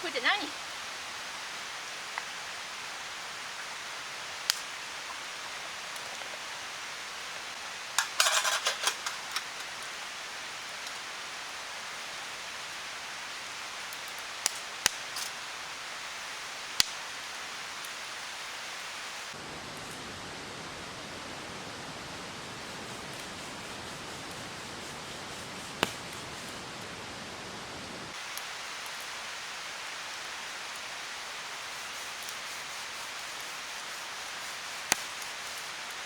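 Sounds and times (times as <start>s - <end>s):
fire crackling: 0.0s - 36.0s
wood fire hissing: 0.0s - 36.0s
sharp pops of fire: 4.4s - 4.8s, 14.0s - 15.4s, 16.8s - 17.1s, 25.8s - 26.2s, 34.8s - 35.4s.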